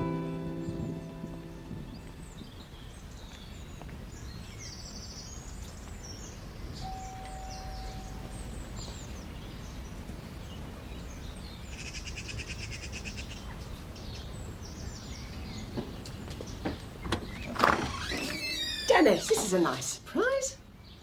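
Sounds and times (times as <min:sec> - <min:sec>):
small birds chirping: 0:00.0 - 0:21.0
bird trill: 0:06.8 - 0:08.9.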